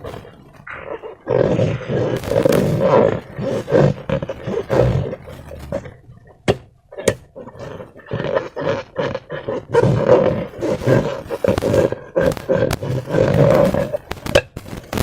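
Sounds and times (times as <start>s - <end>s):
slime squelching and crackling: 0.0s - 15.0s
sharp clicks: 10.8s - 15.0s.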